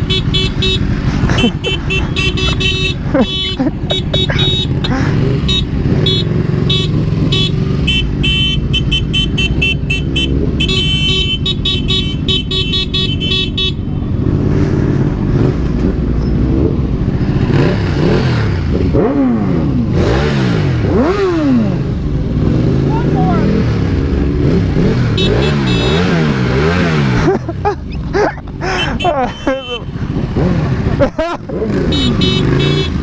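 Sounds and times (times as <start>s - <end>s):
horn tooting: 0.0s - 13.9s, 24.8s - 27.2s, 28.6s - 30.5s, 31.6s - 33.0s
motorcycle engines idling: 0.0s - 14.1s, 27.0s - 33.0s
motorcycle engine revving: 0.0s - 33.0s.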